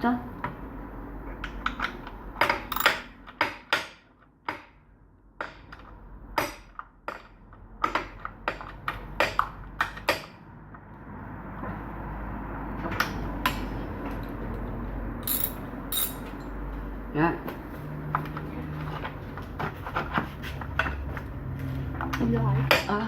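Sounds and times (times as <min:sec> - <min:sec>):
metal tools clinking and clicking: 0:02.7 - 0:03.1, 0:15.2 - 0:16.6.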